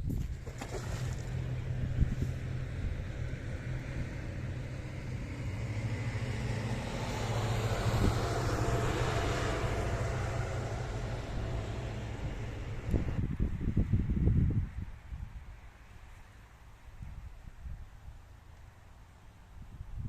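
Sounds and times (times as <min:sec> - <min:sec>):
low steady hum: 0:00.0 - 0:13.4
distant engine passing: 0:00.4 - 0:13.2.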